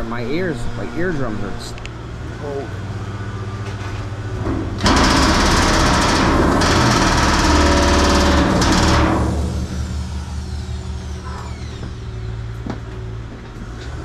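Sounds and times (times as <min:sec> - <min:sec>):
engine hum: 0:00.0 - 0:14.0
power nibbler chattering on steel: 0:04.8 - 0:10.8.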